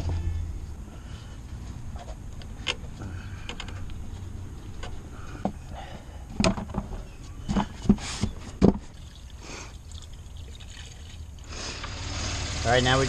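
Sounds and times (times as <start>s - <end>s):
coolant pouring: 8.8s - 13.0s.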